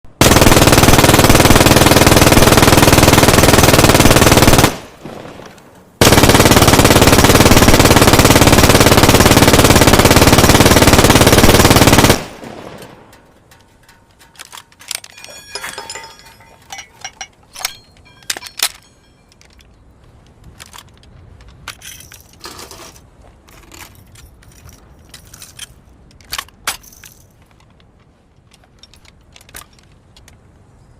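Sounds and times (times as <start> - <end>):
machine gun firing bursts: 0.2 - 5.2, 6.0 - 13.0
quiet clicks and knocks: 12.8 - 15.1.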